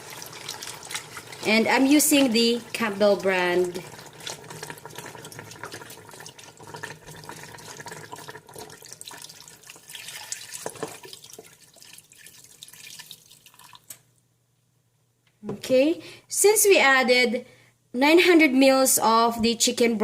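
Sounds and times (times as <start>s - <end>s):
liquid pouring into a pot: 0.0s - 14.0s.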